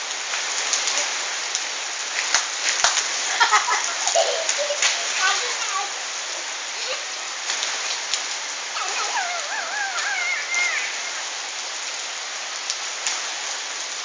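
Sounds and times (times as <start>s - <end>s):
raindrops ticking on surfaces: 0.0s - 14.0s
steady rain: 0.0s - 14.0s
high wavering voice: 8.8s - 11.3s.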